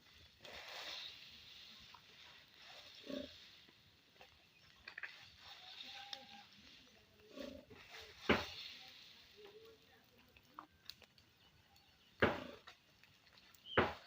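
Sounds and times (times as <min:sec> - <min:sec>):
farm animal calls: 0:04.4 - 0:08.3.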